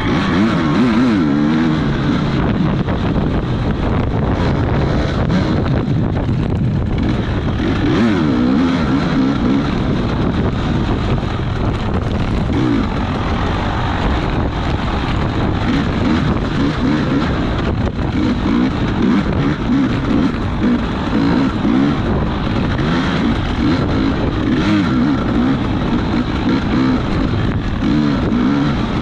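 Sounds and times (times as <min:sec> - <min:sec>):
small racing engine revving: 0:00.0 - 0:29.0
wind on microphone: 0:00.0 - 0:29.0.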